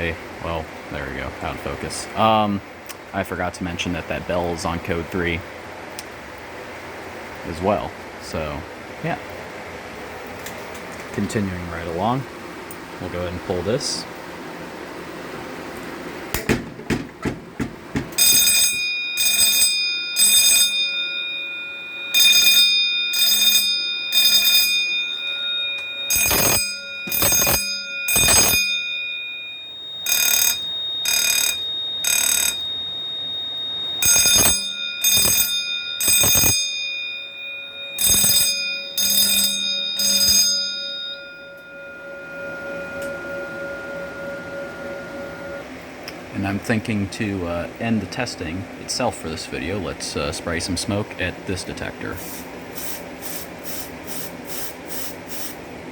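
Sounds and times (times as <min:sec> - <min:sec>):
fire alarm bell ringing: 0:18.1 - 0:46.8
steady high beep: 0:24.8 - 0:46.6.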